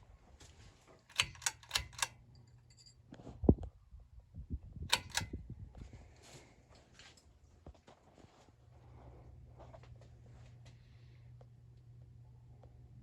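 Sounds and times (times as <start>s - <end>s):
low steady hum: 0.0s - 13.0s
sharp clicks: 1.1s - 2.2s, 4.9s - 5.4s.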